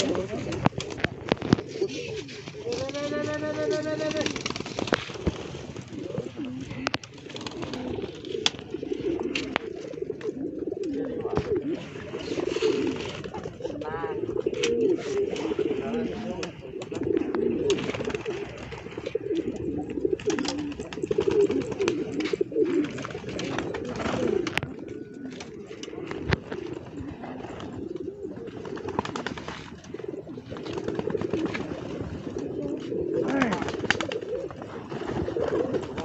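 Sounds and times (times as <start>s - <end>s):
pigeons cooing: 0.0s - 36.0s.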